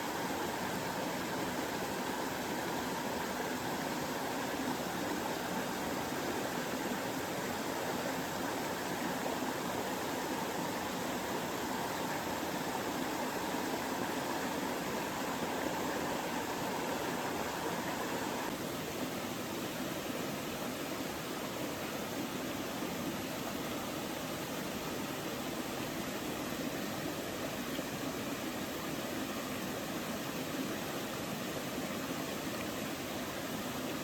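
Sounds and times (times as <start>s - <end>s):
stream rushing over rocks: 0.0s - 34.0s.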